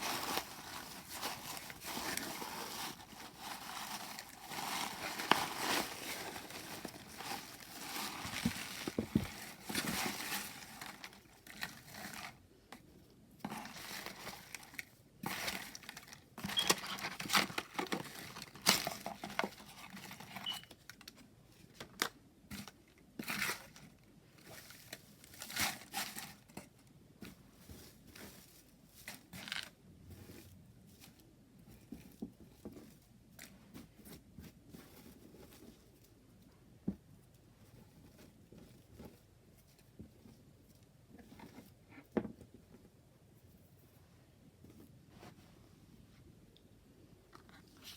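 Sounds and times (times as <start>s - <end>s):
packaging crinkling and rustling: 0.0s - 12.5s, 13.4s - 31.2s.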